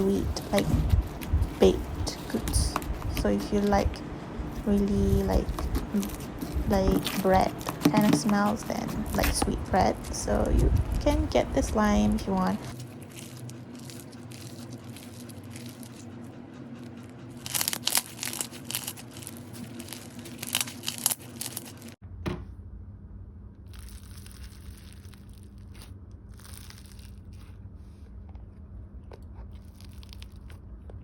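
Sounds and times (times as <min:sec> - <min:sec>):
slime crunching and popping: 0:12.8 - 0:16.0, 0:17.4 - 0:21.9, 0:23.7 - 0:27.5, 0:29.1 - 0:31.0.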